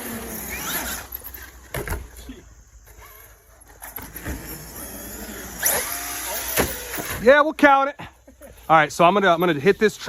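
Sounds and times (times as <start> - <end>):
electric motor whining: 4.2 - 7.1.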